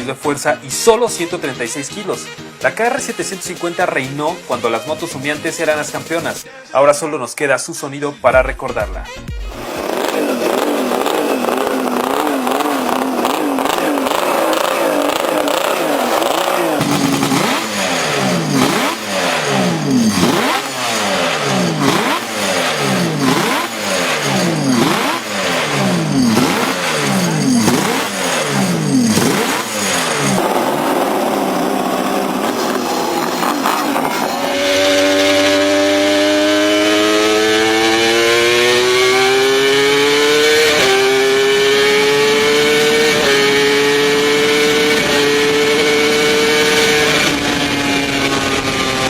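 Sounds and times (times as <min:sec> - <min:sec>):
two-stroke racing engine revving: 0:00.0 - 0:06.4, 0:09.4 - 0:49.0.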